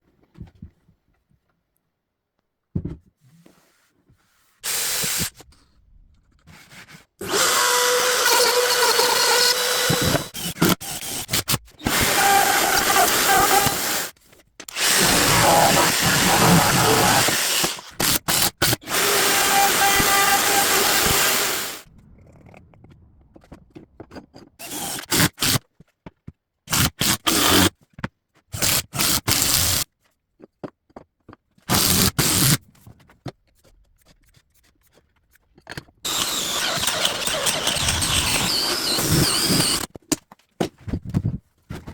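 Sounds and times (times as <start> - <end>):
woodworking power tools running: 7.2 - 11.2, 11.9 - 14.1, 14.7 - 17.9, 18.8 - 21.8, 36.1 - 39.9.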